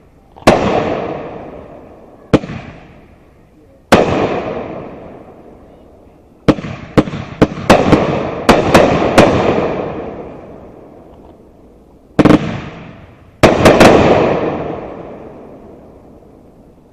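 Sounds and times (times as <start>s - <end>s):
firework shells bursting: 6.4s - 15.7s.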